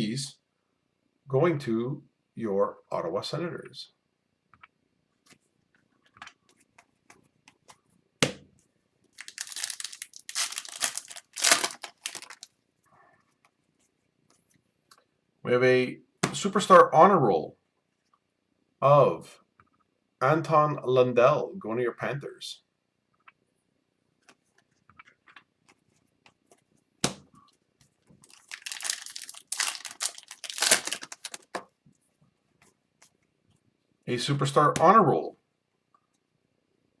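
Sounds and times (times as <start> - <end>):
foil wrapper tearing and crinkling: 9.2 - 12.5, 28.2 - 31.6.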